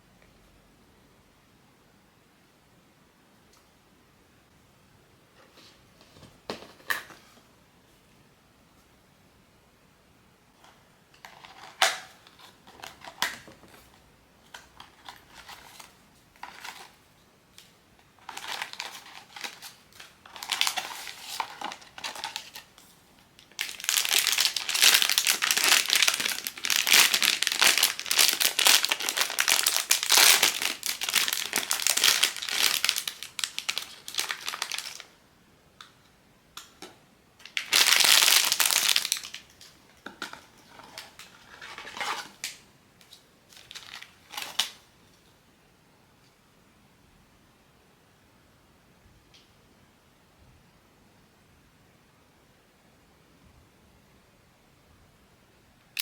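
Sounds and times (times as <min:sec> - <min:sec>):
plastic packaging crinkling: 0:11.2 - 0:17.0, 0:18.2 - 0:35.2, 0:37.4 - 0:44.8.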